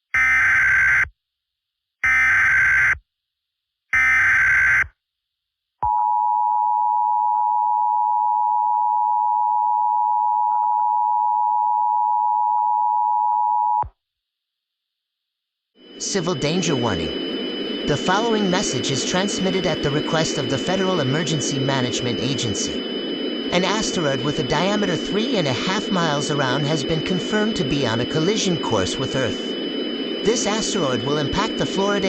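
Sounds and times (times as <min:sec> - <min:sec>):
screechy data bursts: 0:15.9 - 0:32.0
two-tone attention signal: 0:16.0 - 0:29.6.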